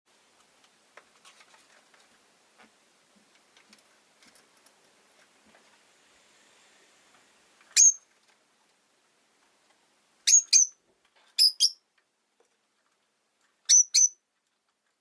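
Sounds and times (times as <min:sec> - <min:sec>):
bird chirp: 0:07.7 - 0:08.0, 0:10.2 - 0:10.8, 0:11.4 - 0:11.8, 0:13.7 - 0:14.2.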